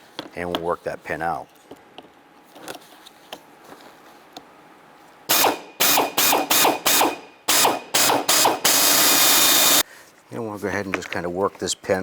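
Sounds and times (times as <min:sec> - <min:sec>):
power drill bursts: 0:05.3 - 0:09.8.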